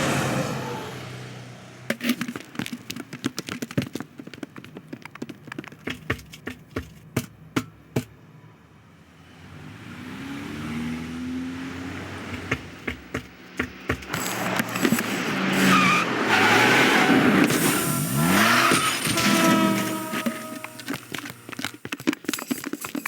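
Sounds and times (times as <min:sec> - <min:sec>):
cars passing: 0:00.0 - 0:03.4, 0:06.6 - 0:21.8
tyres squealing: 0:01.9 - 0:08.0, 0:11.7 - 0:23.0.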